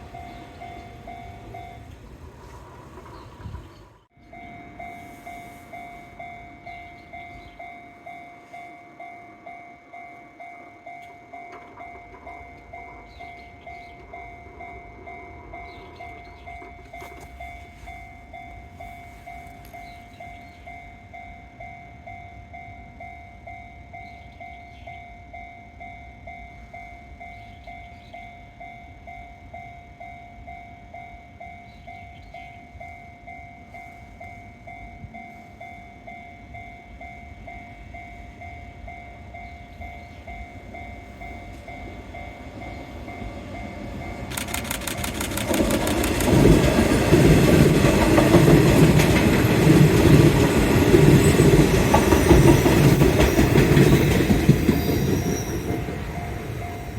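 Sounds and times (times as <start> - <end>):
level crossing warning bell: 0.0 - 2.4, 4.1 - 56.9
train running noise: 0.0 - 56.9
wheels clacking over rail joints: 43.3 - 56.9.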